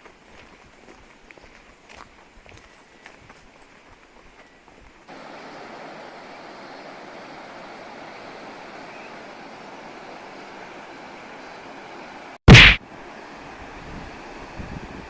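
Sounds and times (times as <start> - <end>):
flowing water rushing: 5.1 - 15.0.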